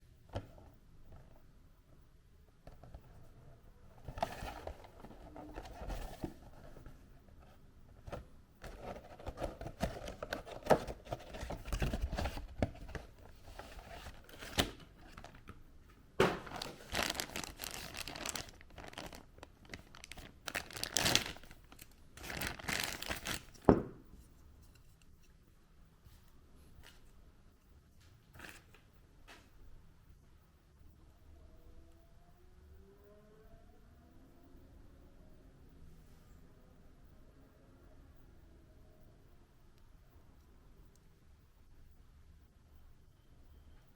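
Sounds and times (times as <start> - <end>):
plastic packaging crinkling: 8.7 - 15.6, 16.2 - 23.8.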